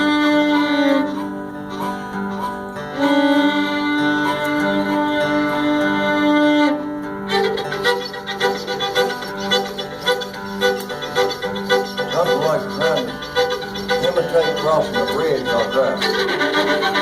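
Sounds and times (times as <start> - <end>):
solo fiddle: 0.0 - 17.0.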